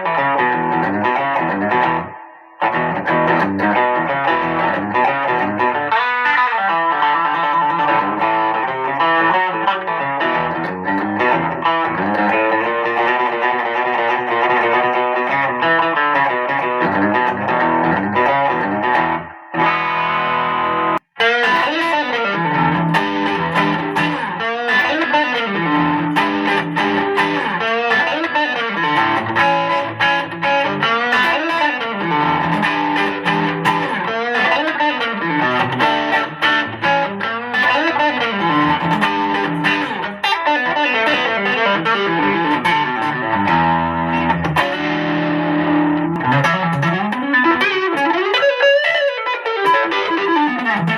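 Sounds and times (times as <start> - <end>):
distorted electric guitar runs: 16.5 - 48.6.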